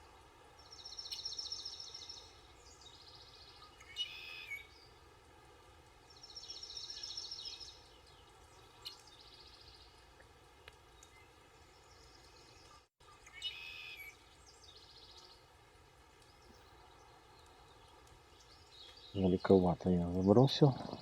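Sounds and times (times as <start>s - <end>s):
songbird trilling: 3.5s - 4.8s, 13.2s - 15.2s.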